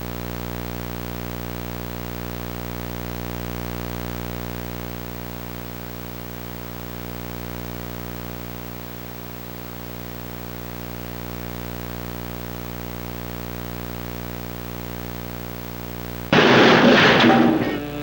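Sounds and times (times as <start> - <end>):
loud harsh noise burst: 16.3 - 18.0.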